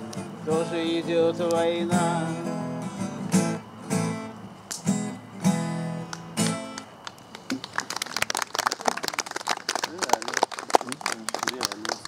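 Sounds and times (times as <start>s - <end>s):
acoustic guitar strumming: 0.0s - 7.0s.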